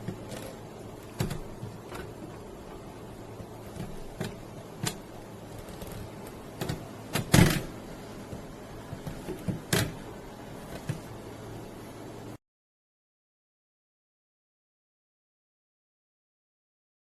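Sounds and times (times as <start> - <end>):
steady low hum: 0.0 - 12.4.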